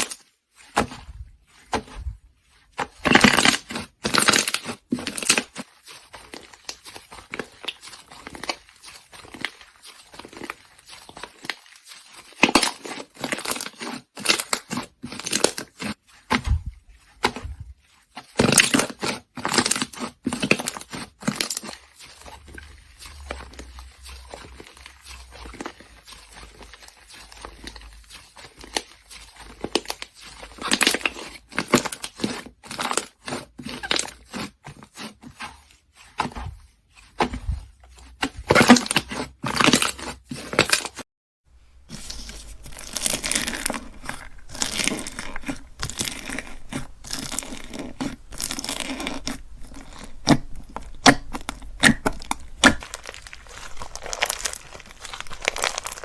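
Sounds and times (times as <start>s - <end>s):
slime crackling and popping: 3.0s - 5.5s, 41.8s - 56.0s.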